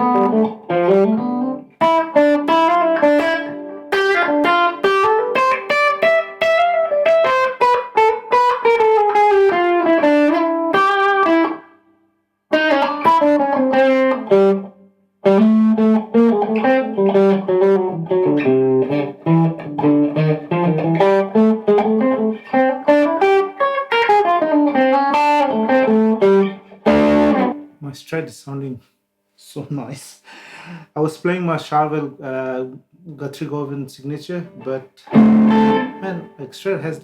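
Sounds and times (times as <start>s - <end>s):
electric guitar picked runs: 24.1s - 27.6s, 35.1s - 36.2s.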